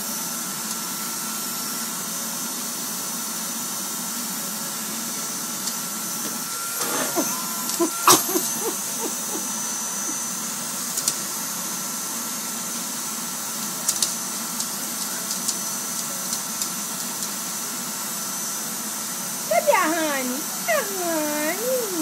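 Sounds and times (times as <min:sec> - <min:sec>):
vacuum cleaner whining: 0:02.8 - 0:12.7, 0:17.8 - 0:22.0.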